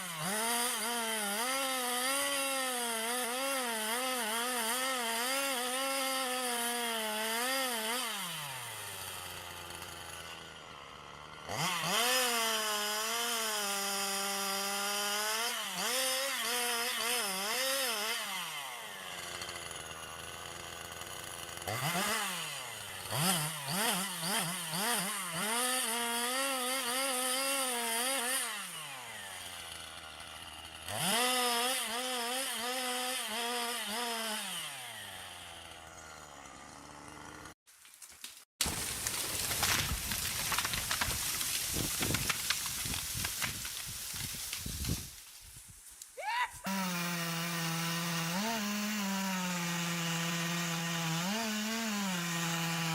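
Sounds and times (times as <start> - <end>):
chainsaw engine cutting: 0.0 - 37.6, 38.6 - 45.9, 46.6 - 52.9
chainsaw idling: 0.0 - 37.6
chainsaw throttle blips: 13.6 - 28.5.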